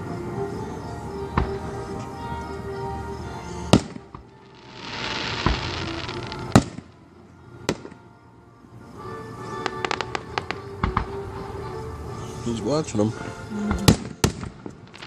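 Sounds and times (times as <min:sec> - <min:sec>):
fireworks booming: 0:03.7 - 0:07.0, 0:09.6 - 0:11.3, 0:13.7 - 0:15.0
hissing crackle: 0:03.7 - 0:07.0, 0:09.4 - 0:11.3, 0:13.9 - 0:15.0.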